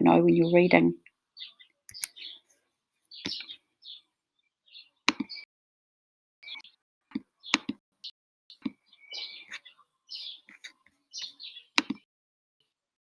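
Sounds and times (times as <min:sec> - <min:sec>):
bird chirping: 0:00.0 - 0:05.5, 0:06.4 - 0:06.8, 0:07.4 - 0:07.7, 0:08.5 - 0:12.0
sharp clicks: 0:01.9 - 0:02.2, 0:05.1 - 0:05.3, 0:11.8 - 0:12.0.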